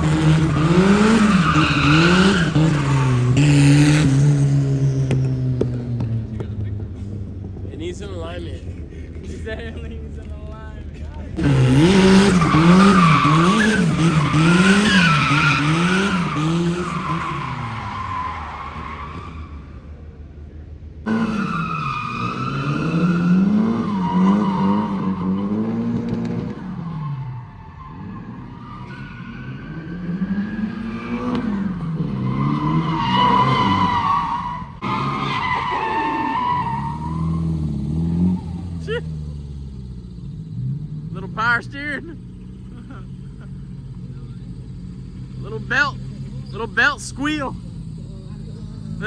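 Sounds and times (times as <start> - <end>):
tyres squealing: 0.0 - 3.6, 11.4 - 19.6, 26.6 - 40.8, 42.4 - 49.0
car engine revving: 0.0 - 49.0.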